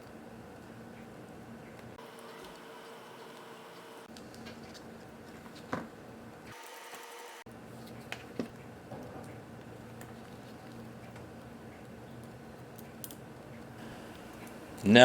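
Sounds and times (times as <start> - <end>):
steady low hum: 9.4 - 15.0.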